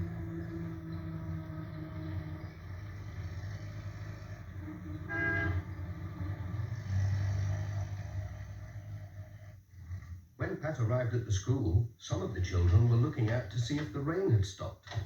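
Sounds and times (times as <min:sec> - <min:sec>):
van engine running: 0:00.0 - 0:09.4
short horn toot: 0:05.1 - 0:05.7.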